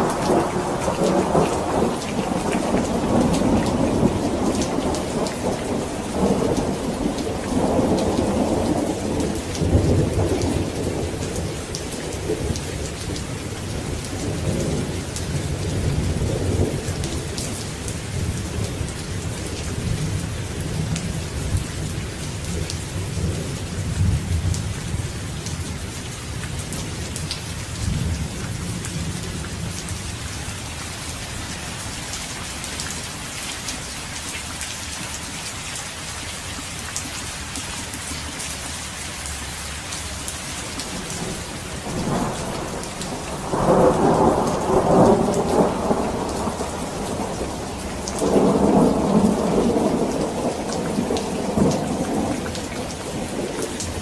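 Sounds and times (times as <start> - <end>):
rolling thunder: 0.0 - 19.2, 40.9 - 54.0
heavy rain: 0.0 - 54.0.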